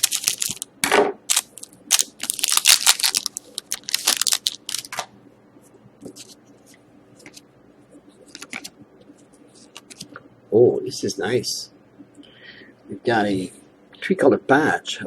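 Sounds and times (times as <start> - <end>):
cards rustling and clicking: 0.0 - 0.7, 1.3 - 5.1, 8.3 - 8.7, 9.6 - 10.1
wrapper tearing and crinkling: 0.0 - 0.7, 1.3 - 5.0.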